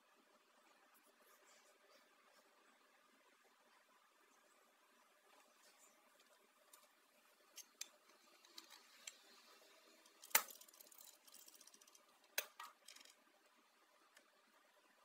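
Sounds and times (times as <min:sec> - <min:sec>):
small objects clicking and tapping: 0:06.2 - 0:13.3
rattling tiny clicks: 0:10.0 - 0:13.2.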